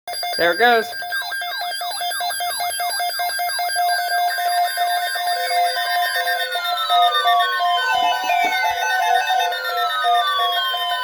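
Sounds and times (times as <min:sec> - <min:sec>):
falling alarm chirp: 0:00.1 - 0:11.0
slow falling alarm tone: 0:00.1 - 0:11.0
steady beeping tones: 0:00.1 - 0:11.0.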